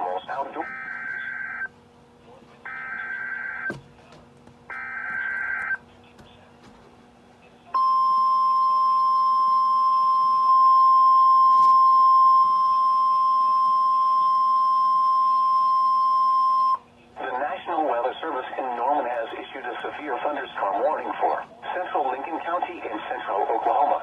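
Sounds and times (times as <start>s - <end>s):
steady alarm tone: 0.6s - 1.7s, 2.7s - 3.7s, 4.7s - 5.8s, 7.8s - 16.8s.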